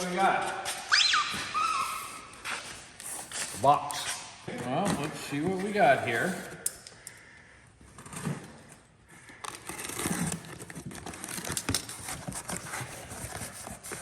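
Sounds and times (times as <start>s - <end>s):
packaging rustling and crinkling: 8.0s - 14.0s.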